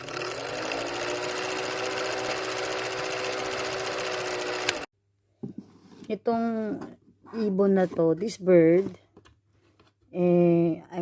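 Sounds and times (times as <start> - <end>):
small motor running: 0.0 - 4.9.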